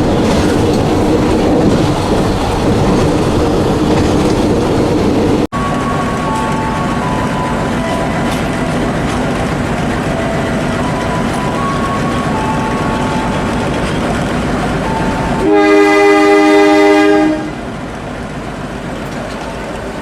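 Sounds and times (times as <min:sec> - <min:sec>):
diesel locomotive rumble: 0:00.0 - 0:20.0
locomotive horn: 0:05.6 - 0:09.2, 0:10.0 - 0:13.6, 0:14.8 - 0:17.6.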